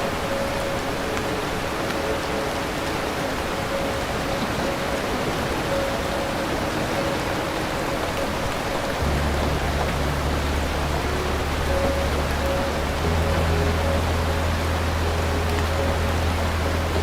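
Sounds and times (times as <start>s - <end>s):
heavy rain falling: 0.0s - 17.0s
low steady hum: 9.0s - 17.0s.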